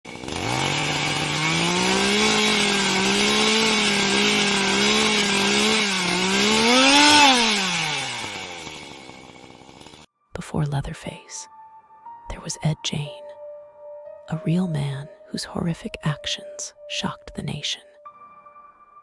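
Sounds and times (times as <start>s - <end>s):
chainsaw engine revving: 0.1s - 10.1s.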